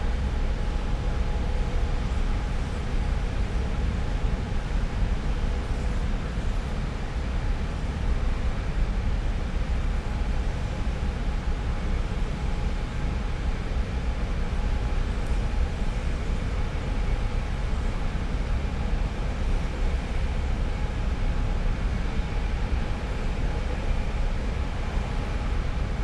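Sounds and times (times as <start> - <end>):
faint machine hums: 0.0 - 26.0.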